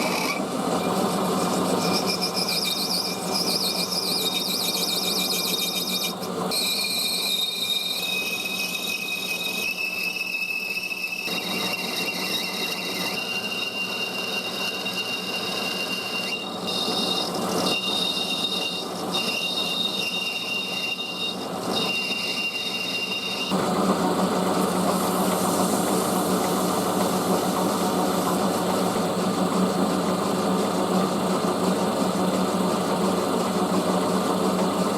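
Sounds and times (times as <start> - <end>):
lathe cutting tool squealing: 0.0 - 23.9
lathe running: 0.0 - 34.9.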